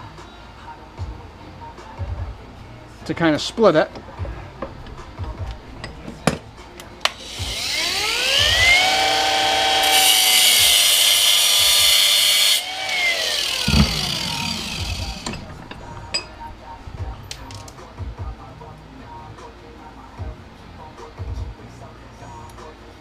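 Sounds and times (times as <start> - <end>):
electric grinder whining: 7.2 - 15.9
grinder grinding steel: 7.2 - 17.3.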